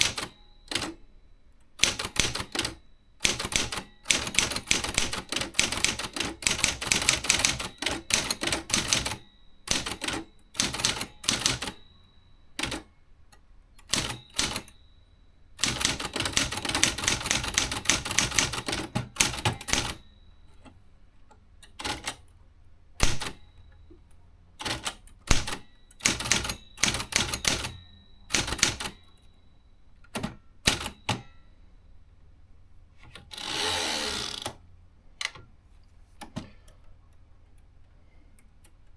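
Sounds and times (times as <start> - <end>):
typewriter key strikes: 0.0 - 1.0, 1.8 - 11.8, 13.8 - 14.7, 15.6 - 20.0, 23.0 - 23.5, 24.6 - 29.2, 30.1 - 31.4
typewriter bell ring: 0.0 - 13.1, 13.8 - 20.8, 23.0 - 24.0, 24.6 - 31.8.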